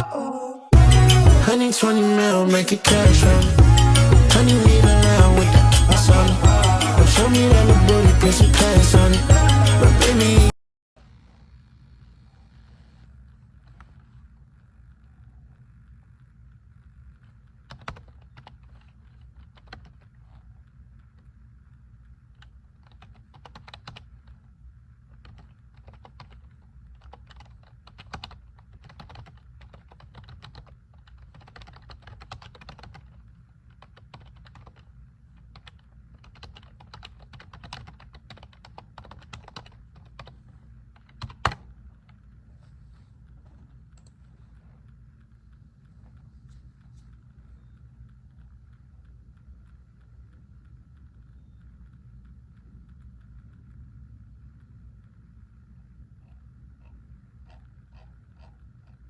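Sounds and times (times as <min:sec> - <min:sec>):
low hum: 0:00.0 - 0:01.7, 0:02.7 - 0:17.3
keyboard typing: 0:02.8 - 0:10.6, 0:17.7 - 0:20.1, 0:22.4 - 0:24.4, 0:25.2 - 0:42.3.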